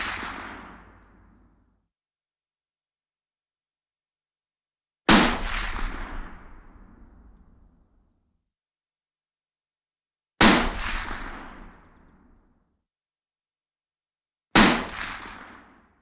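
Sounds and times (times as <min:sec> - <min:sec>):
rifle shots with echo: 0:00.0 - 0:01.3, 0:05.1 - 0:07.7, 0:10.4 - 0:12.1, 0:14.6 - 0:15.9.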